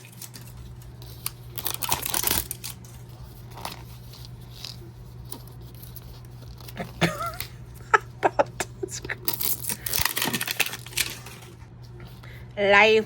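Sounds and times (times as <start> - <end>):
toy package tearing open: 0.0 - 3.0, 9.2 - 11.6
wrapping rustling and clicking: 0.0 - 7.4, 9.2 - 11.6.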